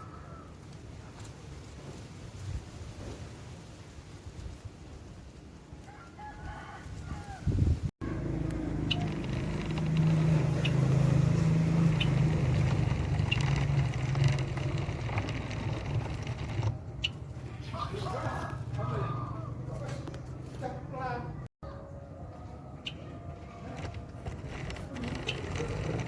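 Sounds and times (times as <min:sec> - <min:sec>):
vehicle engine humming: 0:08.0 - 0:26.0
small birds chirping: 0:08.5 - 0:14.2, 0:16.9 - 0:19.5, 0:22.8 - 0:24.0.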